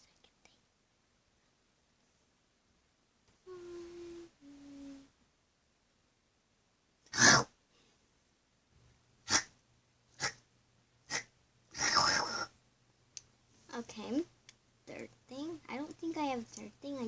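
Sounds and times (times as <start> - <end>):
person sneezing: 7.1 - 7.5, 9.3 - 9.5
small sneezes or snorts: 7.1 - 7.6, 9.2 - 9.6, 10.2 - 10.4, 11.1 - 12.5.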